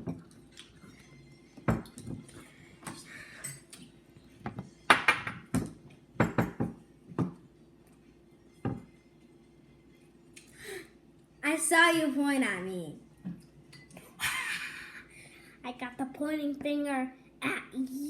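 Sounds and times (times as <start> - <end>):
spoons clinking against bowls: 3.0 - 3.8.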